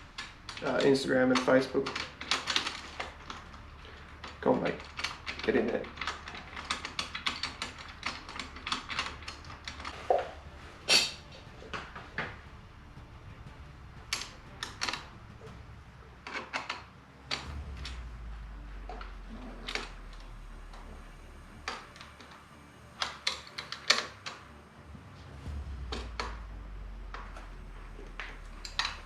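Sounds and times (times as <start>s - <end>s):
low steady hum: 0.0s - 29.0s
small hardware clicking and knocking: 0.1s - 10.4s.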